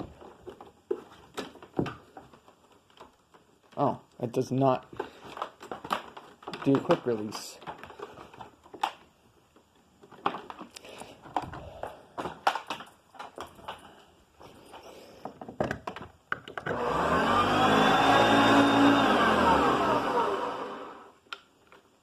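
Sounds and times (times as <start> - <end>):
plastic clicks and knocks: 4.9 - 9.1, 15.2 - 16.8
vacuum cleaner motor whine: 16.6 - 21.2.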